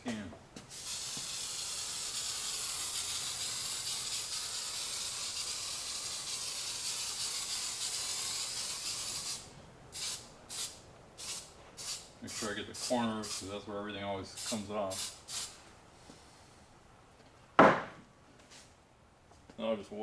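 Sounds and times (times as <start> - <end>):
aerosol can spraying hiss: 0.7 - 13.5, 14.4 - 15.6.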